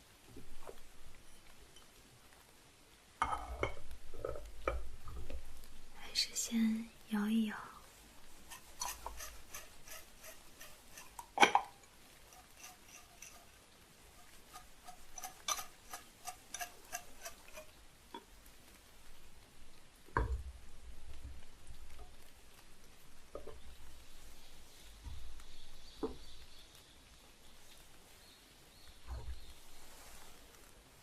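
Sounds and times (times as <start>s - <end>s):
tea leaves rattling in porcelain cup: 8.2s - 17.8s.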